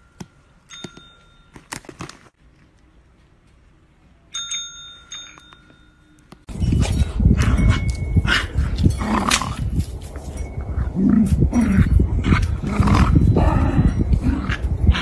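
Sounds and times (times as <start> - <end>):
small metal bell ringing: 0.0 - 1.7, 4.3 - 9.2, 10.2 - 10.9.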